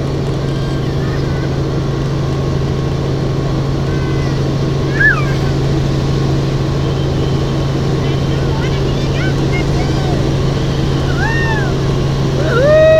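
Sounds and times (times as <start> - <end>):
helicopter rotor and engine drone: 0.0 - 12.9.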